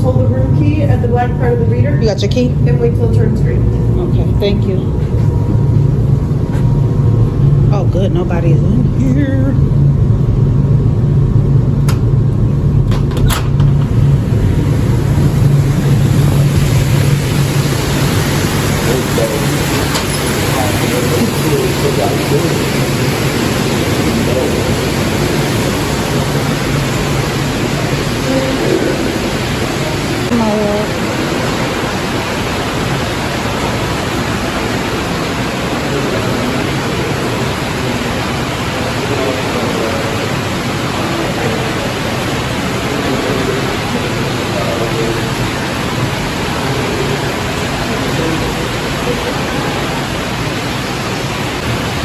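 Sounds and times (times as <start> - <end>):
low machinery hum: 0.0 - 52.0
even rushing noise: 13.6 - 52.0.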